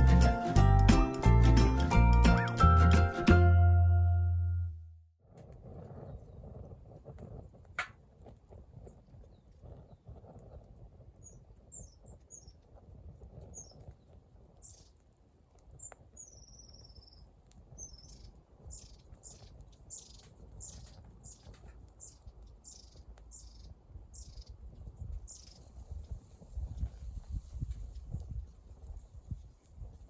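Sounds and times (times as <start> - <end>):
songbird calling: 16.2 - 24.5.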